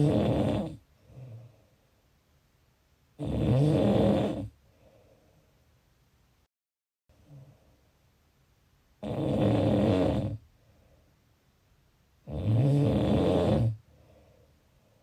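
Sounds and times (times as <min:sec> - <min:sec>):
person snoring: 0:00.0 - 0:01.6, 0:03.2 - 0:04.6, 0:09.0 - 0:10.4, 0:12.2 - 0:13.8
soft breath out: 0:04.6 - 0:05.6, 0:10.5 - 0:11.3, 0:13.8 - 0:15.0.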